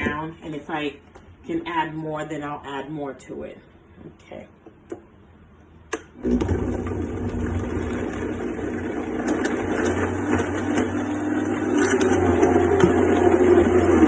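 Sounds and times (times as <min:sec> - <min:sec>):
blender motor running: 0:06.2 - 0:14.0.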